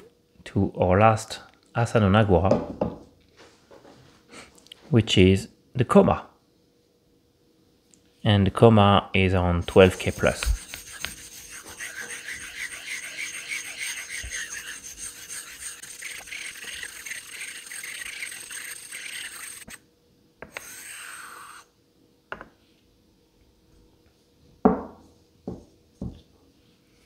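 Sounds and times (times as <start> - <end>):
stone rasping on stone: 9.6 - 19.8, 20.4 - 21.7.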